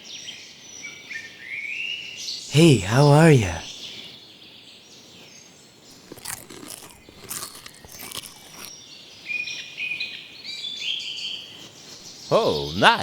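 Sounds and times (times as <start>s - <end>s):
crunching scraping noises: 6.0s - 8.7s.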